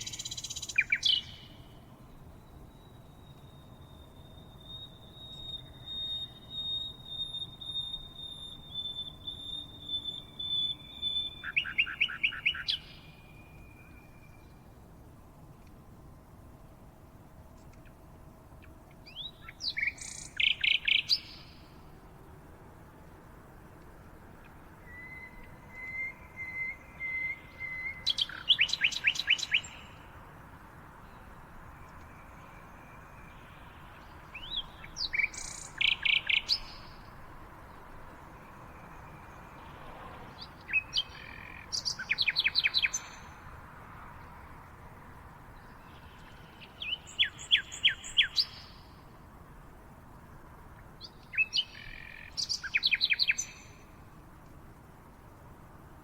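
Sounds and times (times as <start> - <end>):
steady bird trill: 0.0 - 14.6, 34.1 - 37.1
songbirds singing: 0.0 - 15.8, 17.3 - 54.4.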